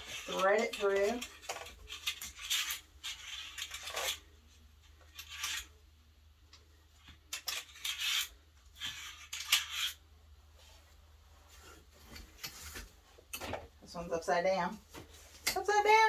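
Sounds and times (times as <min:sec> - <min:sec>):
fabric rustling and rubbing: 0:09.8 - 0:13.3.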